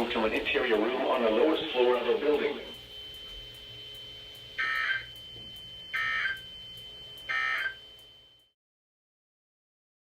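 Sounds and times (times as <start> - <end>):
digital data tone bursts: 4.5 - 8.3.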